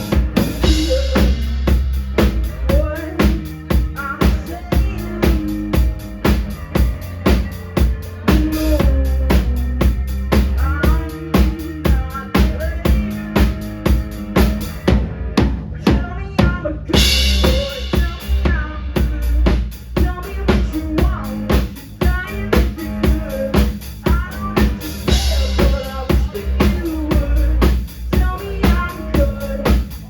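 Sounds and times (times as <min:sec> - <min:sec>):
drum kit beat: 0:00.0 - 0:30.0
live band playing: 0:00.0 - 0:30.0.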